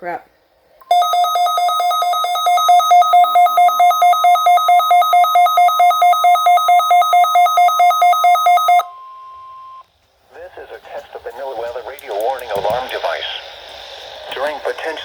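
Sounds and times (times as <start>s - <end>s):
faint steady warning tone: 0.8s - 9.9s
warbling alert alarm: 0.9s - 9.8s.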